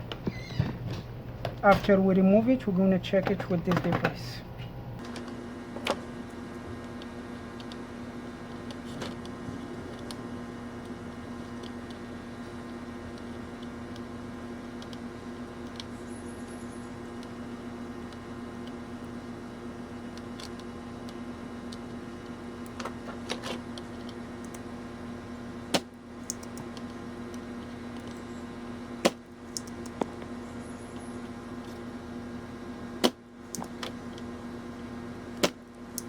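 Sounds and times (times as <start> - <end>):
steady electrical hum: 0.0 - 36.0.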